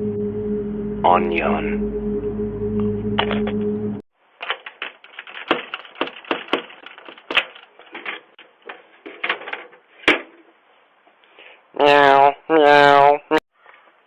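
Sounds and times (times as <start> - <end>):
steady droning tone: 0.0 - 4.0
irregular clicks and knocks: 4.4 - 10.4.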